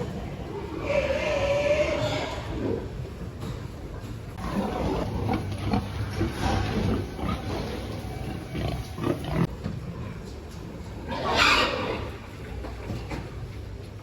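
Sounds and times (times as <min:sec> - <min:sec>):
pigs grunting: 0:00.4 - 0:03.1, 0:04.4 - 0:09.6
pig crying: 0:00.6 - 0:02.7, 0:11.1 - 0:12.2.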